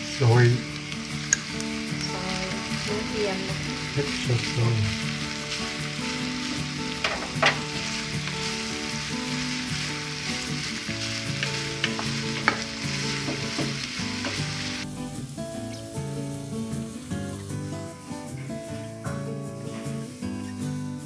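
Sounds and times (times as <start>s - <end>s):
meat sizzling in a pan: 0.0s - 21.0s
utensil tapping a pan: 0.2s - 14.8s.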